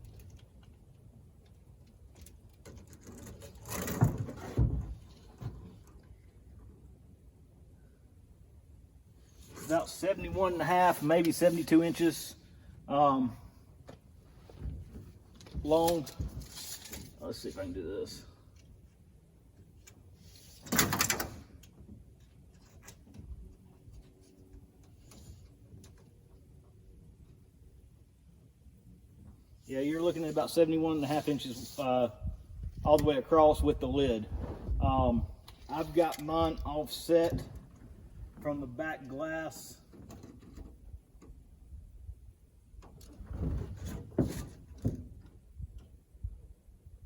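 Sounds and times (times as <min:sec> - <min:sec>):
short rustle: 0:14.2 - 0:18.6, 0:33.8 - 0:38.7.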